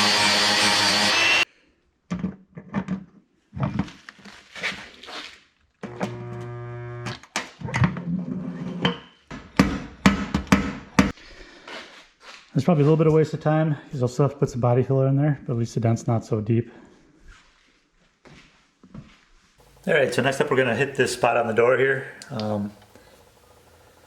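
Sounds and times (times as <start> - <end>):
power sander running: 0.0 - 1.5, 5.8 - 7.2
stud welder buzzing: 0.0 - 1.5, 5.8 - 7.3, 19.6 - 24.0.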